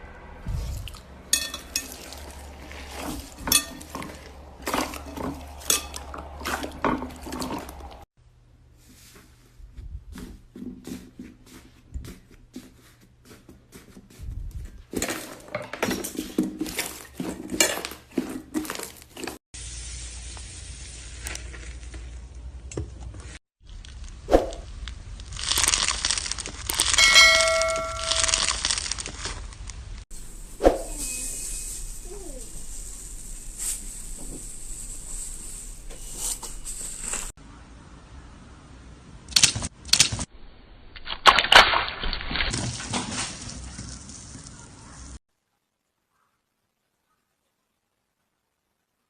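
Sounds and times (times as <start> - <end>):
slime crackling and popping: 23.6 - 27.0, 27.9 - 29.7.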